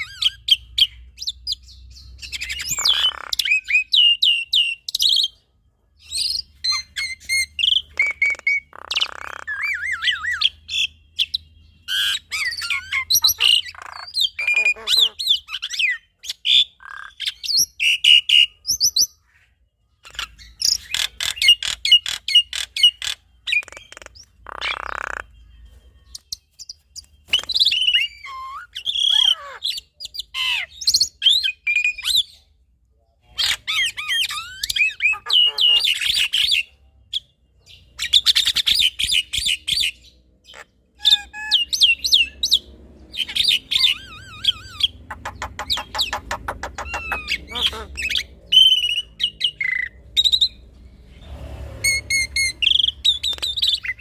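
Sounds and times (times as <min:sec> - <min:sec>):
mynas singing and chattering: 0:43.2 - 0:49.3.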